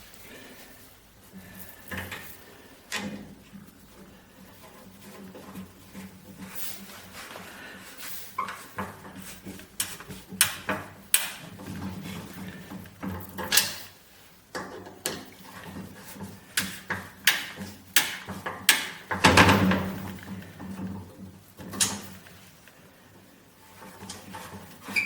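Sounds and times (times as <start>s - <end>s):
tools clicking and knocking: 21.6s - 22.1s.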